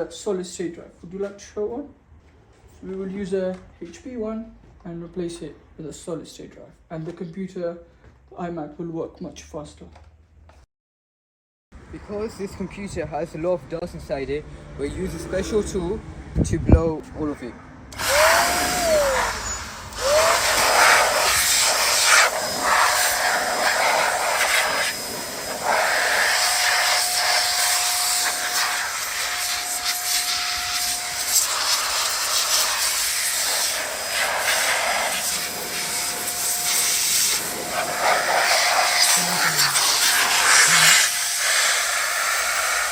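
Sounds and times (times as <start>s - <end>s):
air blower rushing with whine: 17.9s - 42.9s.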